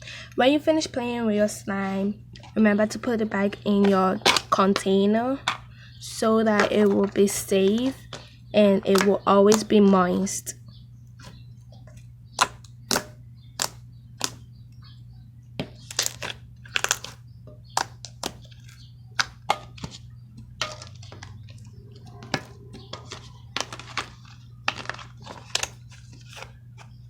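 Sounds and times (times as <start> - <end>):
steady low hum: 0.0 - 27.0
slime clicking and popping: 12.4 - 14.4.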